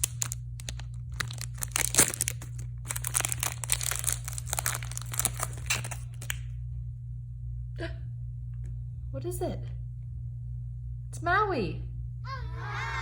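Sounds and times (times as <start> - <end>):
packaging crinkling and tearing: 0.0 - 6.4
low hum: 0.0 - 13.0.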